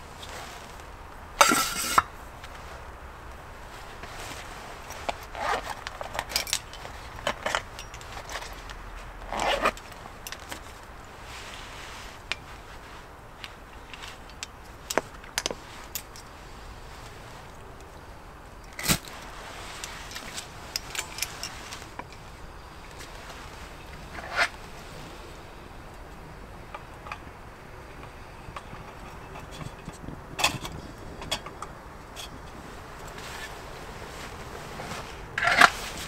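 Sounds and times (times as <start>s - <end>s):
camp cooking gear clinking: 1.4s - 2.1s, 4.8s - 11.0s, 18.6s - 24.7s, 25.8s - 33.6s.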